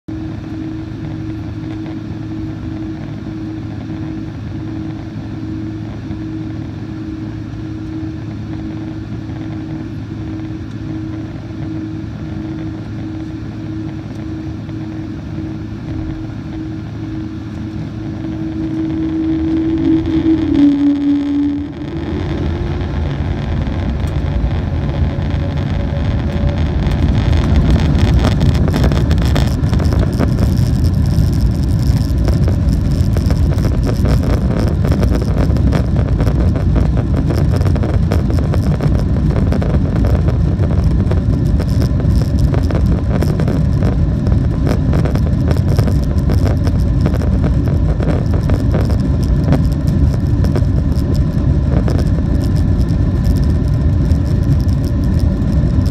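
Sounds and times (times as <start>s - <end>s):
jet engines rumbling: 0.1s - 55.9s.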